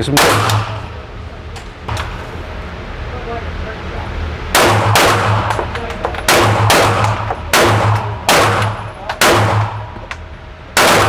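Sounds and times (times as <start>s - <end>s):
pistol shots echoing: 0.0s - 1.1s, 4.5s - 10.2s, 10.8s - 11.0s.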